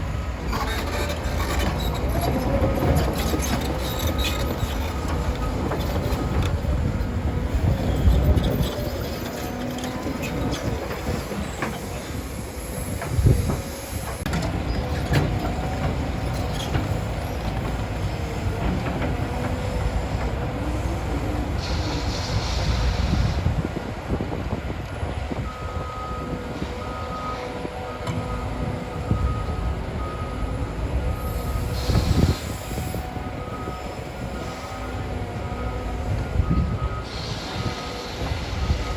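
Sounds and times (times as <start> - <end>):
diesel engine under load: 0.0 - 38.9
hydraulic hiss bursts: 21.6 - 23.5, 37.1 - 38.9.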